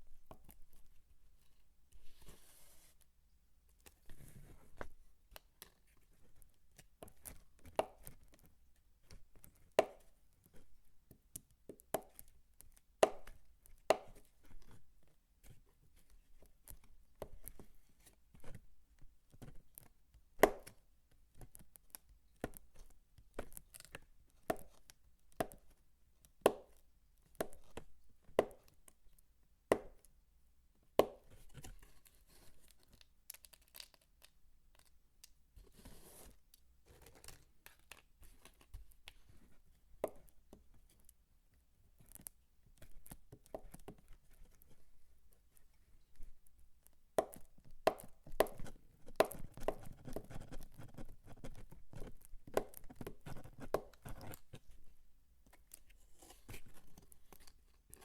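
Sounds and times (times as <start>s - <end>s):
knife chopping soap: 29.7s - 30.1s, 47.2s - 50.3s, 51.9s - 54.5s.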